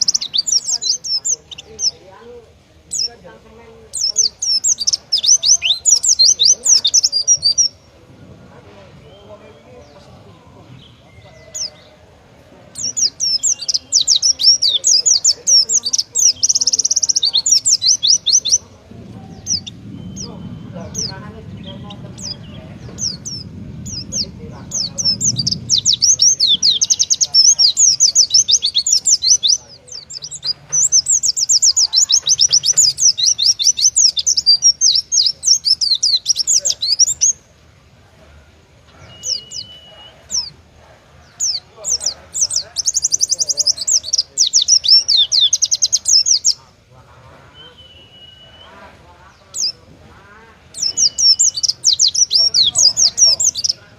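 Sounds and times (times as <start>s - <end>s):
bird singing whistled notes: 0.0s - 2.0s, 3.9s - 8.0s, 9.0s - 10.1s, 12.7s - 18.7s, 19.3s - 37.5s, 38.9s - 40.6s, 41.3s - 46.6s, 47.5s - 48.8s, 50.7s - 53.8s
bird trill: 0.0s - 2.0s, 3.9s - 8.0s, 12.7s - 37.4s, 38.9s - 40.6s, 50.7s - 53.9s
bird whistle: 39.0s - 40.5s, 47.6s - 48.8s.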